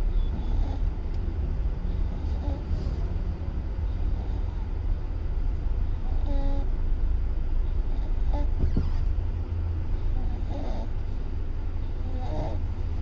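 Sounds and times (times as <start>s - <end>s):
car cabin road noise: 0.0s - 13.0s
baby snoring softly: 0.2s - 1.0s, 2.1s - 3.0s, 4.1s - 4.7s, 6.0s - 6.7s, 7.8s - 8.7s, 10.0s - 11.1s, 11.9s - 12.8s.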